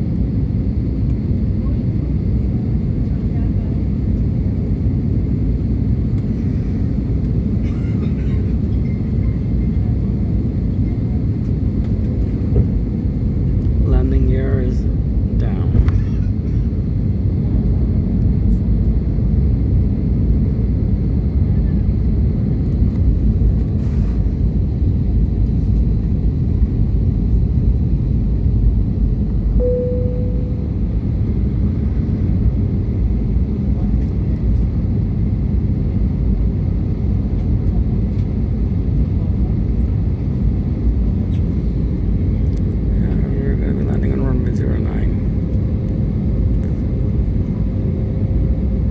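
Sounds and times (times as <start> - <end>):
jet engines rumbling: 0.3 - 37.3
short tone: 29.6 - 31.2.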